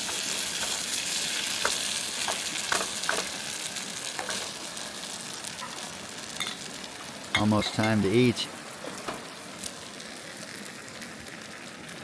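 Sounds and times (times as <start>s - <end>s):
food sizzling in a pot: 0.0s - 12.0s.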